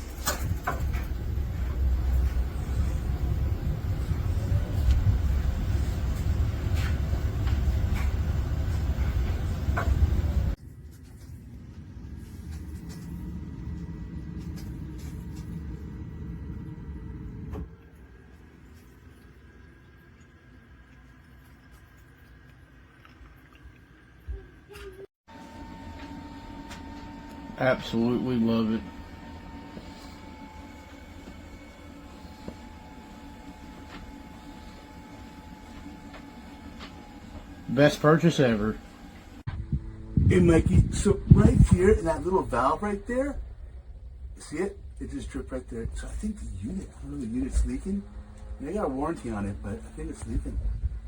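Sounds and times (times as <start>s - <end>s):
steady low rumble: 0.0s - 18.5s, 39.4s - 51.0s
faint constant whine: 0.0s - 51.0s.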